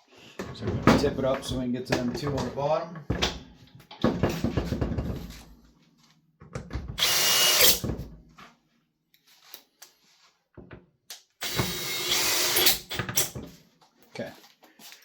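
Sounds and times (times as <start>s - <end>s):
power drill driving a bolt: 7.0s - 7.8s, 11.4s - 13.4s.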